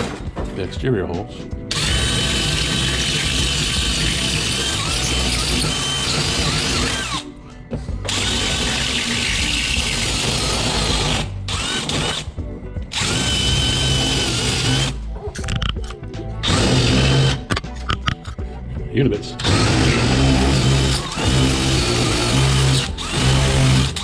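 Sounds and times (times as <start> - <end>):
power drill boring through door: 1.7 - 7.3, 8.1 - 15.0, 16.4 - 17.6, 19.4 - 24.0.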